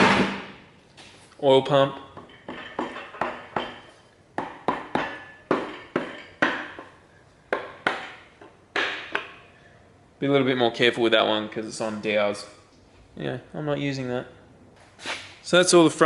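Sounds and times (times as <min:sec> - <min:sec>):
metal tools clinking and knocking: 0:02.0 - 0:04.0, 0:04.9 - 0:07.0.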